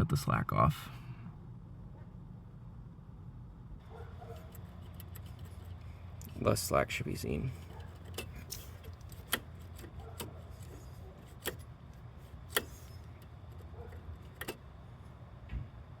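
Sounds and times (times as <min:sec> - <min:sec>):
low steady hum: 0:00.0 - 0:16.0
throttle pedal clicks: 0:04.0 - 0:14.7.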